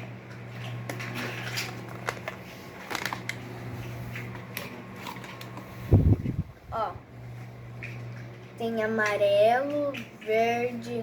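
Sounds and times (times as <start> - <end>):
low steady hum: 0.0 - 11.0
packaging crinkling: 1.4 - 5.6.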